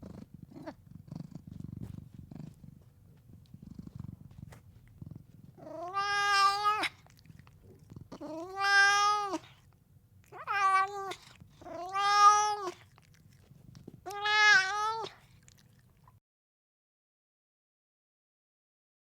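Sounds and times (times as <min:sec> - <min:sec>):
cat meowing: 0:05.6 - 0:07.2, 0:08.1 - 0:09.6, 0:10.3 - 0:12.9, 0:14.0 - 0:15.2.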